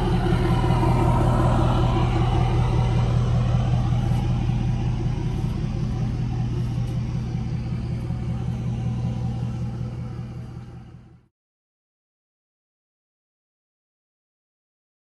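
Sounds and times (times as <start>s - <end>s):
engine rumbling: 0.0s - 11.3s.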